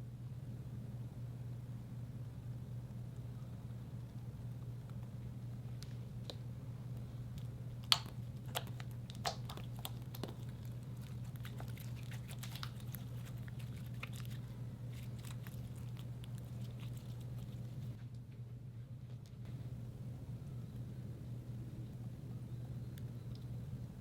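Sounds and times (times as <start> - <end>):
steady low hum: 0.0 - 24.0
slime crackling and popping: 7.8 - 18.0.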